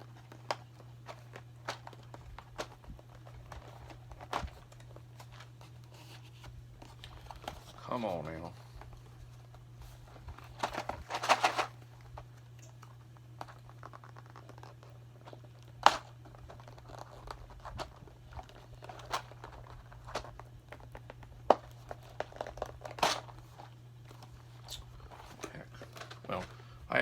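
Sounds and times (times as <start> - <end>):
cardboard clicks and scrapes: 10.1 - 11.8
cardboard tearing and crinkling: 10.2 - 11.9, 13.4 - 26.5.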